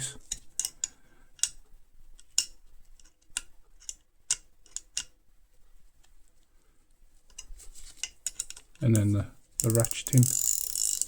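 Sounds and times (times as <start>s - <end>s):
metal ratchet spanners clicking: 9.6s - 11.0s.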